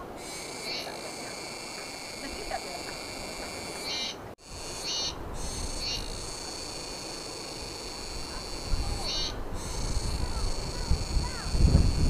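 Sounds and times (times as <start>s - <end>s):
high-pitched insect chorus: 0.2s - 12.0s
wind rumble on microphone: 7.6s - 12.0s.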